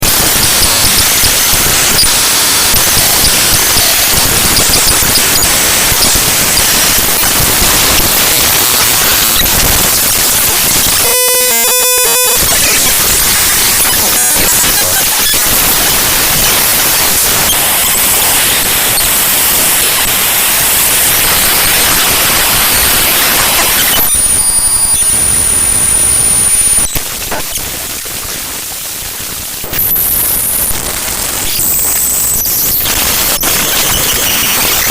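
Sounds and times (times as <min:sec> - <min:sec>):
thin high whine: 0:00.0 - 0:27.6
buzzy pitched tones: 0:00.0 - 0:27.9
harsh digital static: 0:00.0 - 0:34.9.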